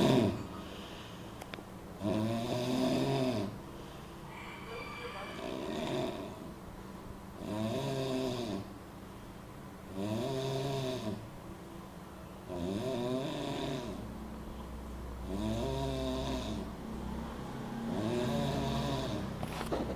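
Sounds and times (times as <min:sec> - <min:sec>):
person snoring loudly: 0:00.0 - 0:00.5, 0:02.0 - 0:03.6, 0:05.4 - 0:06.5, 0:07.4 - 0:08.7, 0:09.9 - 0:11.2, 0:12.5 - 0:14.0, 0:15.2 - 0:17.2, 0:17.8 - 0:19.3.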